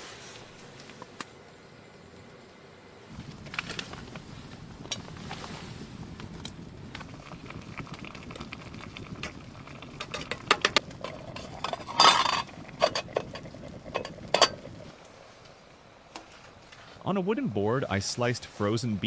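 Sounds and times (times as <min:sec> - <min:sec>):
steady low hiss: 0:00.0 - 0:19.0
cookware clattering: 0:10.0 - 0:14.7.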